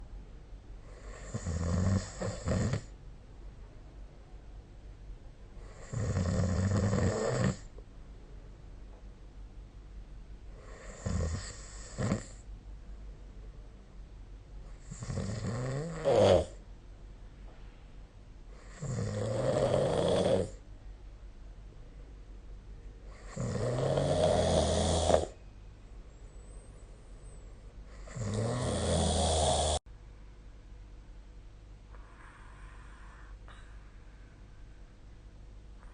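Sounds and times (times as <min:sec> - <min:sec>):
person snoring: 0:00.9 - 0:02.9, 0:05.6 - 0:07.7, 0:10.6 - 0:12.4, 0:14.8 - 0:16.6, 0:18.6 - 0:20.6, 0:23.1 - 0:25.4, 0:27.9 - 0:29.8.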